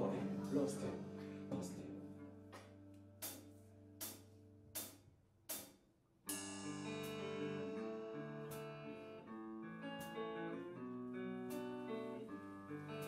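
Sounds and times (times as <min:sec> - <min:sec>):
slow rock ballad guitar and keyboard: 0:06.3 - 0:13.0.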